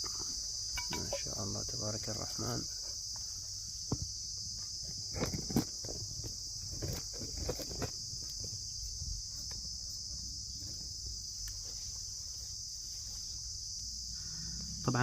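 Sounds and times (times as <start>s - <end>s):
insects chirring: 0.0s - 15.0s
handling knocks and rustles: 0.1s - 1.3s, 4.8s - 8.7s.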